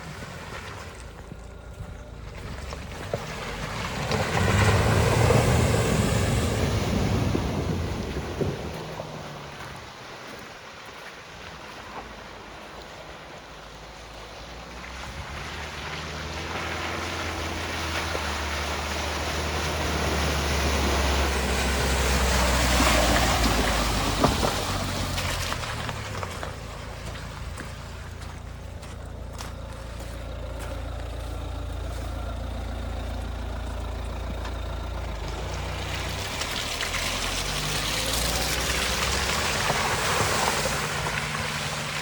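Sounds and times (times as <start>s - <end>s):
wind noise: 0.0s - 12.6s
diesel engine hum: 0.0s - 42.0s.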